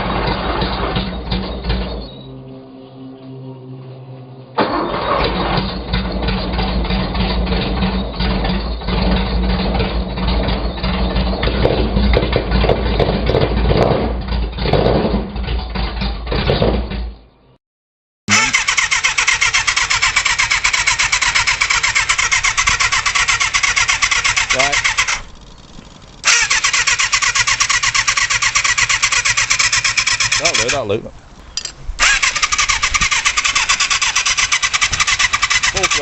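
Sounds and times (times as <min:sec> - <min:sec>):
engine running unevenly with knocks: 0:00.0 - 0:02.6, 0:04.6 - 0:17.4, 0:20.9 - 0:26.4
engine with fast even firing: 0:00.0 - 0:17.6, 0:18.3 - 0:36.0.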